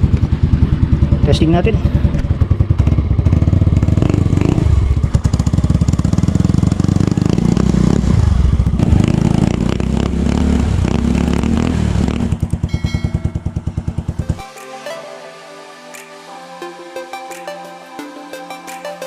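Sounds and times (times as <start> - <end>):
scooter engine revving: 0.0 - 14.5.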